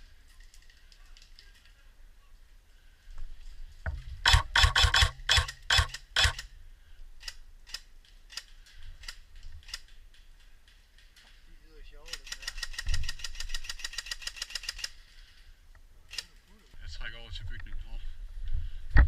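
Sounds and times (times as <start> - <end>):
airsoft guns shooting: 4.2 - 6.5.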